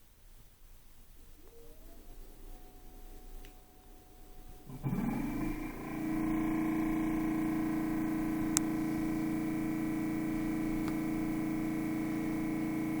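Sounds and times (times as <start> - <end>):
refrigerator humming: 4.3 - 13.0.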